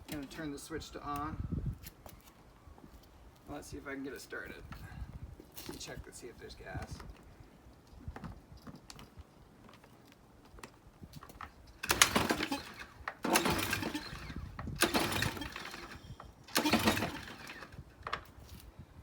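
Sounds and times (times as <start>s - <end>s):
recoil starter cord whirring rattle: 11.7s - 18.4s.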